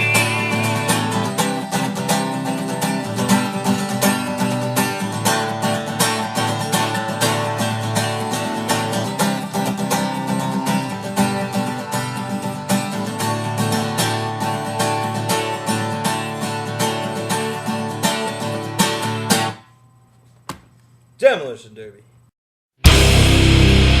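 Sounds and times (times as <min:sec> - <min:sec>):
bass line: 0:00.0 - 0:01.6, 0:22.8 - 0:24.0
picked guitar: 0:00.0 - 0:19.6, 0:22.8 - 0:24.0.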